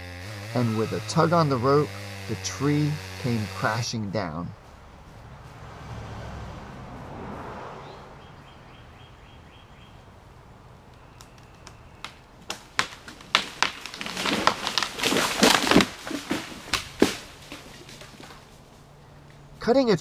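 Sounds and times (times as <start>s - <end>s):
tree cracking and crashing down: 0.0s - 3.6s, 11.4s - 18.8s.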